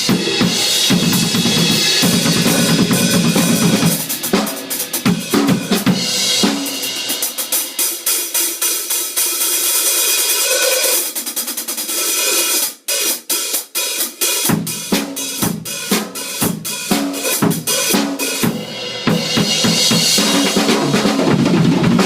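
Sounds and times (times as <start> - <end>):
drum and bass drum hits: 0.0 - 7.8
cymbal and hi-hat strokes: 0.0 - 20.6.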